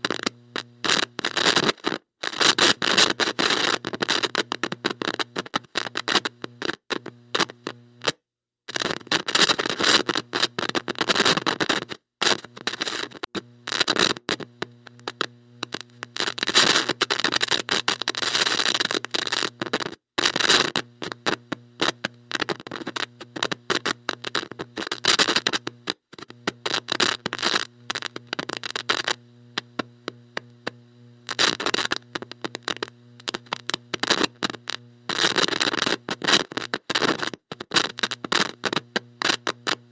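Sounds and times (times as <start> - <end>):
electrical static crackling: 0.0 - 39.9
low electrical hum: 14.4 - 16.2, 27.6 - 35.2.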